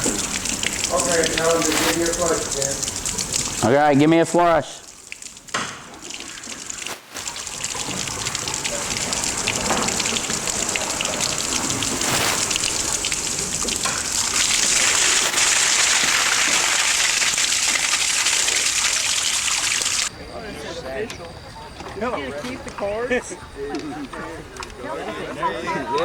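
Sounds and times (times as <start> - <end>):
toilet flushing: 0.0 - 3.8, 4.9 - 20.1.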